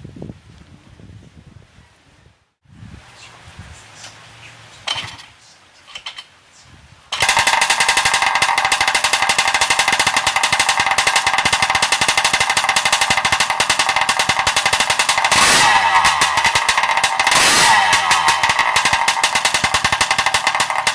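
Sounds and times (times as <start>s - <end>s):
motorbike engine rattling exhaust: 7.1s - 20.9s.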